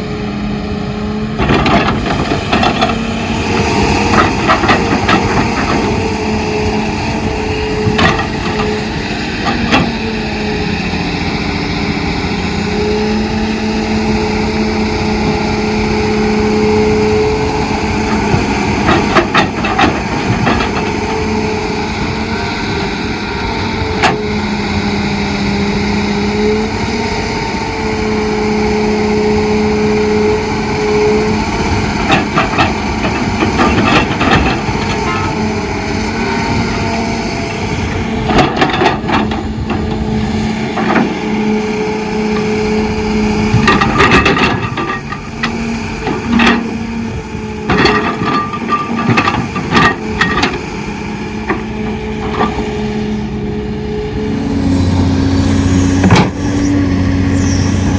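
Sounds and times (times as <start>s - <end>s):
excavator diesel engine running: 0.0s - 57.9s
metal clanks and knocks: 1.4s - 3.0s, 3.6s - 6.2s, 7.8s - 10.0s, 18.1s - 21.4s, 31.9s - 35.5s, 37.9s - 41.4s, 42.3s - 50.7s, 51.4s - 52.9s, 56.0s - 56.4s.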